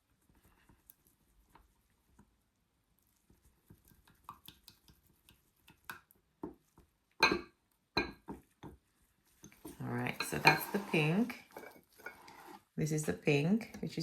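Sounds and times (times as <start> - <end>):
utensils clinking on containers: 9.7 - 13.2.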